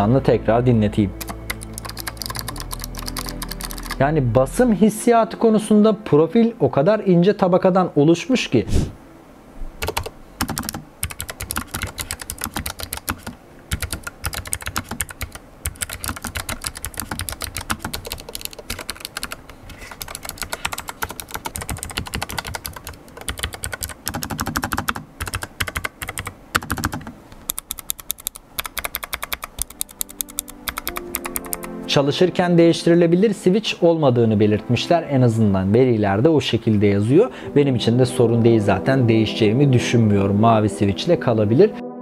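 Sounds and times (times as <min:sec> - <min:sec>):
mechanical keyboard typing: 0:01.2 - 0:04.0, 0:09.8 - 0:31.8.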